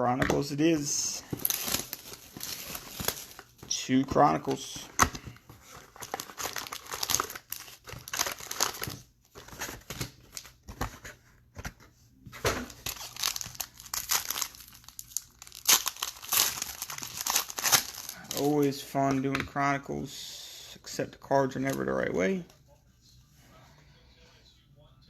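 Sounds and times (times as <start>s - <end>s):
plastic wrappers crinkling and tearing: 1.1s - 10.8s, 12.6s - 18.9s.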